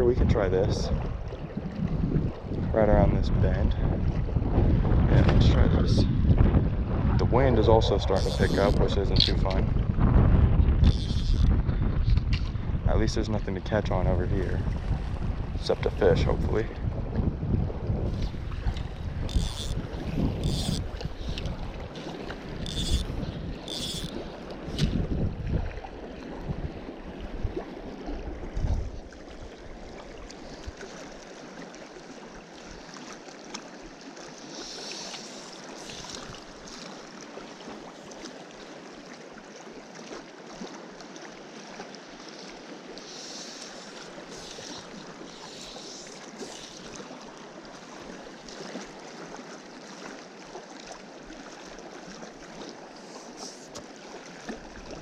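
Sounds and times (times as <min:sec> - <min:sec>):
wind gusting on microphone: 0:00.0 - 0:27.6, 0:28.2 - 0:29.1
stream running over rocks: 0:07.4 - 0:09.7, 0:29.0 - 0:55.0.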